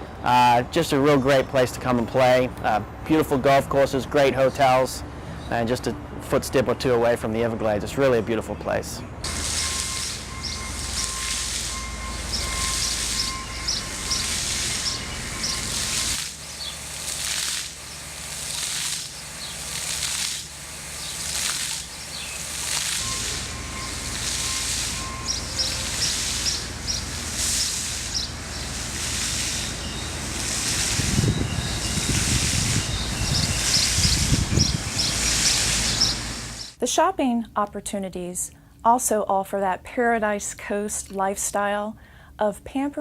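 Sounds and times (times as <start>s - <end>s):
pulsing high hiss: 9.3s - 19.2s, 22.4s - 36.8s.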